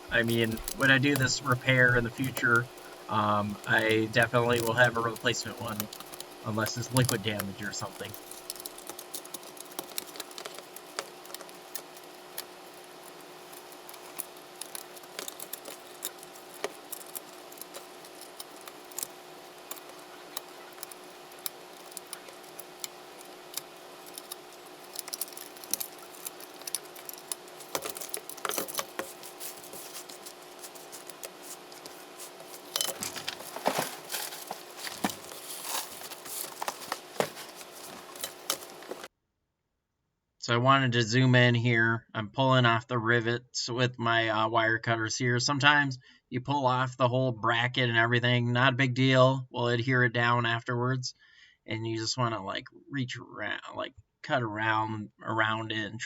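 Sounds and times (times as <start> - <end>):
faint steady hum: 0.0 - 39.1
hand tools clicking and scraping: 0.0 - 39.1.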